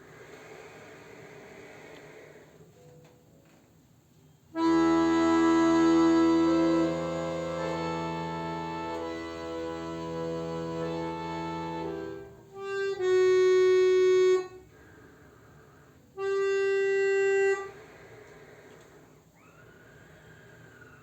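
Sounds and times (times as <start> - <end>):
instrumental chords and held notes: 4.6 - 14.7, 16.2 - 17.7.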